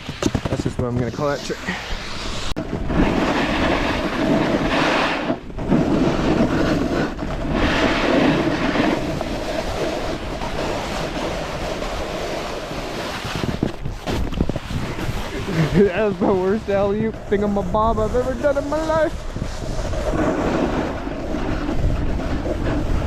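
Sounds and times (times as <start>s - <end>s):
snowboard scraping over snow: 0.0s - 23.0s.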